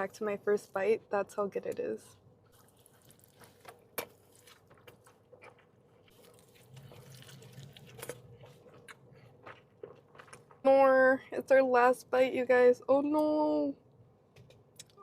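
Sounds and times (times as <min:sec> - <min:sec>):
chewing food: 0:02.5 - 0:10.6.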